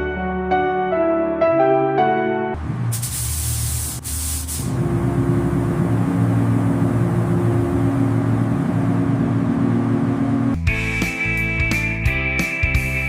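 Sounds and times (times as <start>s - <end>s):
paint spray gun hissing: 2.9s - 4.8s.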